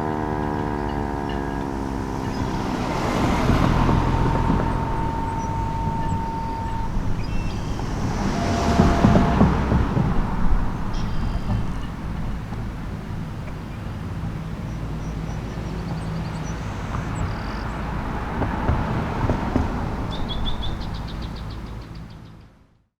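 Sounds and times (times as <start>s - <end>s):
low outdoor rumble: 0.0s - 21.8s.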